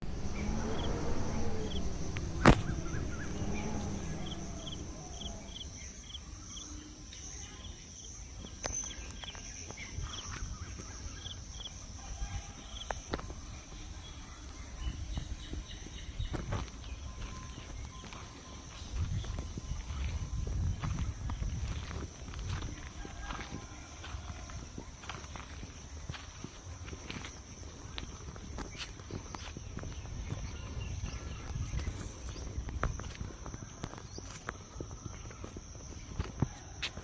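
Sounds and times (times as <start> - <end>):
steady high drone: 0.0 - 6.1
wind rumbling on microphone: 0.0 - 6.2, 9.1 - 37.0
birds chirping: 0.0 - 11.7.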